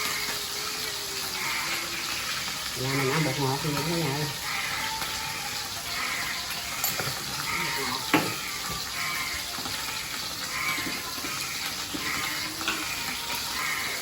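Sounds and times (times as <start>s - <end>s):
fish sizzling in hot oil: 0.0s - 14.0s
utensil knock: 8.1s - 8.4s.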